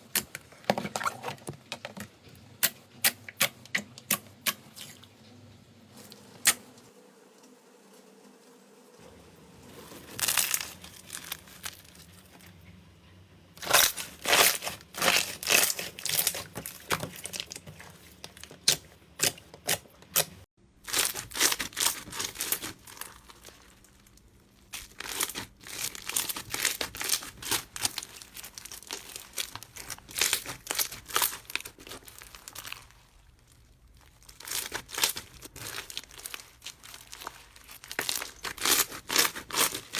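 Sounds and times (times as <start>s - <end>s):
slime squeezed crackling and popping: 10.0s - 12.3s, 13.6s - 20.3s, 20.9s - 39.9s.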